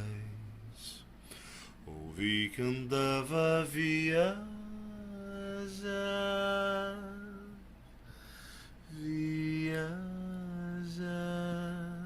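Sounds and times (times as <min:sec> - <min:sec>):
man singing unaccompanied: 0:00.0 - 0:01.1, 0:01.8 - 0:07.7, 0:08.9 - 0:12.0
man taking a breath: 0:01.2 - 0:01.8, 0:08.0 - 0:08.9.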